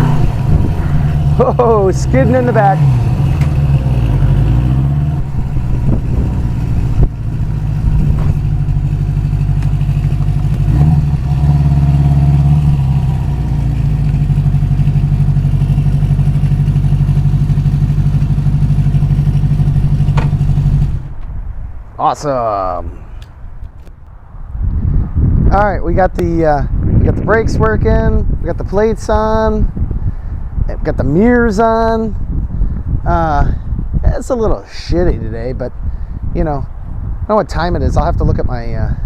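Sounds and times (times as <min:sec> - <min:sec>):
motorcycle engine running: 0:00.0 - 0:21.2.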